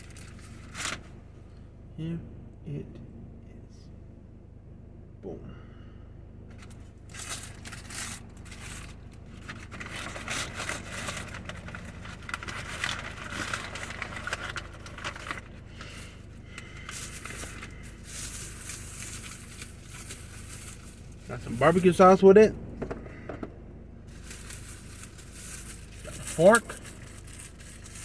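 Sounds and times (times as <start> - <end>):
paper wrappers rustling: 0.0 - 1.2, 6.5 - 22.4, 24.0 - 28.0
low hum: 0.0 - 28.0.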